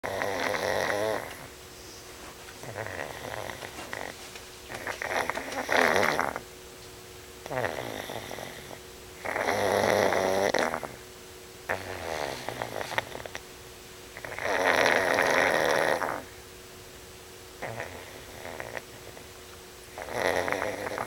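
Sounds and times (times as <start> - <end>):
dog snoring: 0.0 - 1.5, 2.6 - 6.4, 7.4 - 11.0, 11.7 - 13.4, 14.2 - 16.3, 17.6 - 19.3, 19.9 - 21.0.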